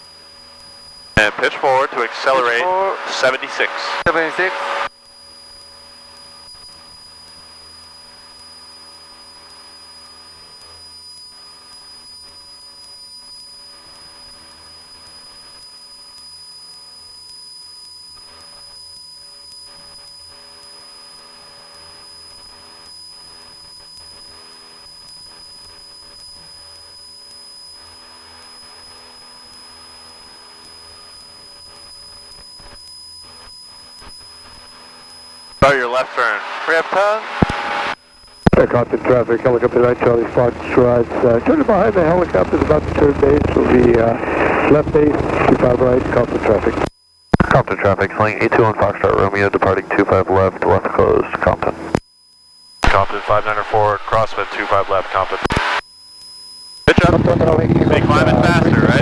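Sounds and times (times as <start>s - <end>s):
aircraft engine and propeller drone: 38.6s - 46.8s, 56.9s - 59.0s.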